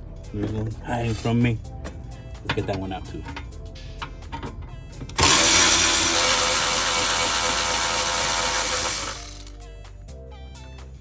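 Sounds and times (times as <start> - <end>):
power tool spinning out bolt: 5.1 - 9.6.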